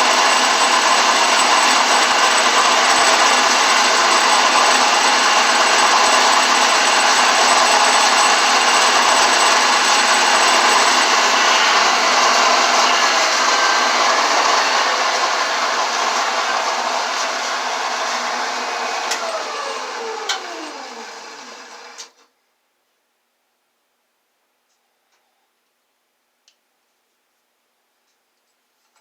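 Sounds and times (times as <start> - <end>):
drill press drilling plastic: 0.0 - 22.1.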